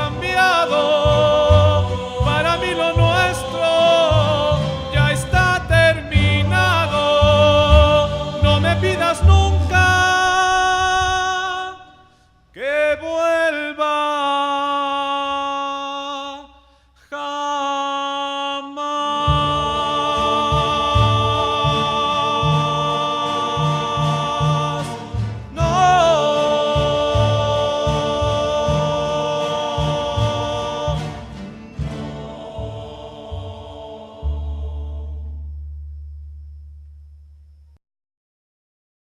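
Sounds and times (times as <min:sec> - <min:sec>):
voices and guitars playing a ballad: 0:00.0 - 0:13.9, 0:19.1 - 0:34.9.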